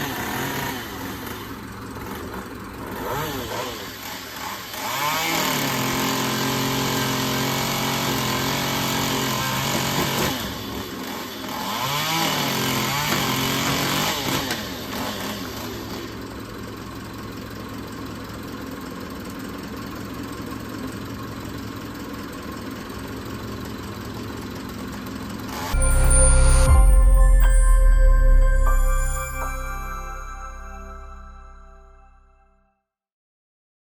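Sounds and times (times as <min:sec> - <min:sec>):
engine revving: 0:02.8 - 0:10.6.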